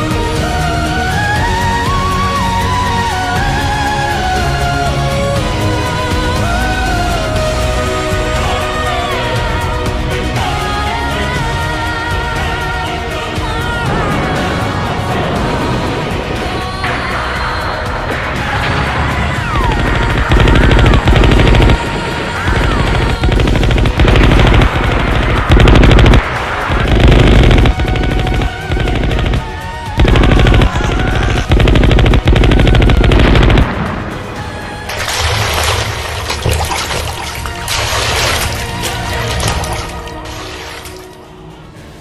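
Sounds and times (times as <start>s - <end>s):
music: 0.0s - 42.0s
automatic gunfire bursts: 20.0s - 33.7s.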